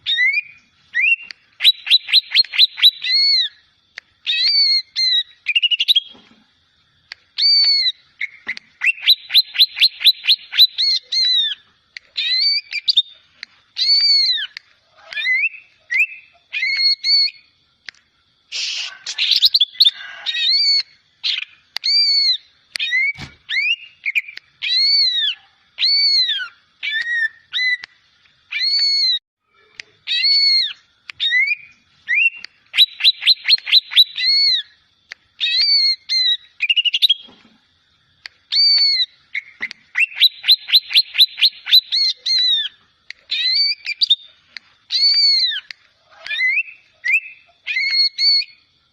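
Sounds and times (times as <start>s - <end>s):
young bird whistling song: 0.0s - 3.6s, 4.2s - 6.2s, 7.3s - 17.5s, 18.5s - 27.9s, 28.5s - 29.2s, 30.0s - 34.8s, 35.4s - 37.3s, 38.5s - 48.7s.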